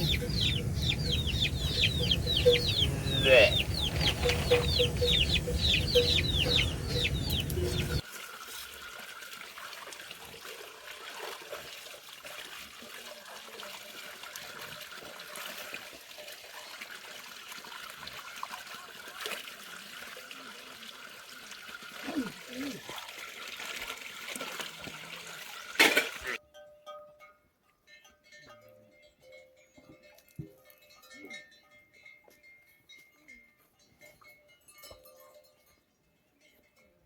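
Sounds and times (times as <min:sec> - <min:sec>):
chickens clucking: 0:00.0 - 0:08.0
low background rumble: 0:00.0 - 0:08.0.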